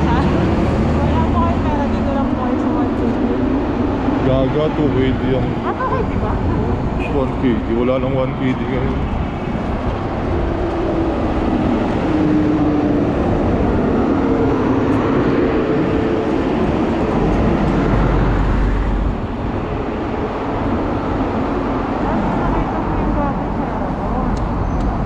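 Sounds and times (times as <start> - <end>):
road noise: 0.0 - 25.0
vehicle engine rumble: 0.0 - 25.0.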